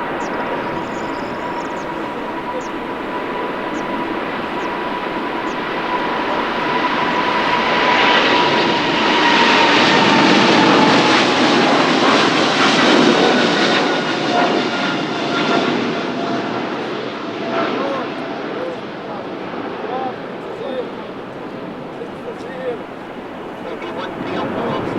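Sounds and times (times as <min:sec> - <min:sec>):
jet engine high whine: 0:00.0 - 0:24.9
jet engine roar: 0:00.0 - 0:24.9.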